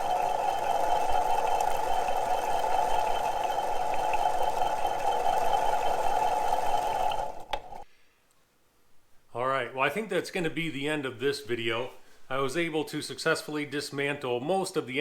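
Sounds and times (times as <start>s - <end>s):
crankshaft whirring hum: 0.0s - 7.8s.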